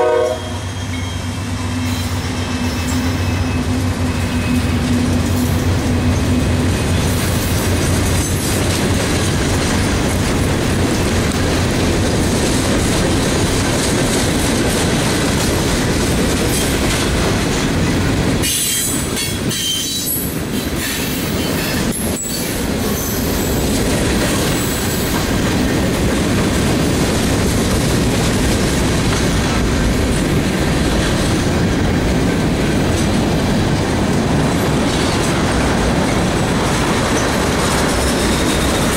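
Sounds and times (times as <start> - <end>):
train wheels rumbling on rail: 0.0 - 38.9
high wheel squeal: 0.4 - 5.6, 18.4 - 23.7
clickety-clack over rail joints: 1.8 - 38.9.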